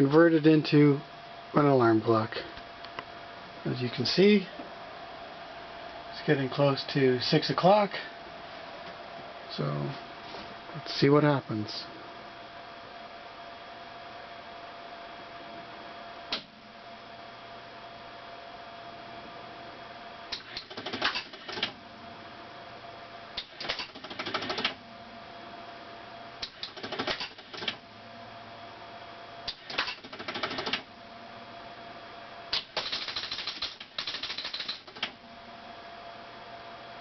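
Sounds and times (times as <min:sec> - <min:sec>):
steady hum: 0:00.0 - 0:37.0
pinball machine rapid clicks: 0:20.6 - 0:21.7, 0:23.6 - 0:24.8, 0:26.6 - 0:27.8, 0:29.6 - 0:30.8, 0:32.8 - 0:35.1.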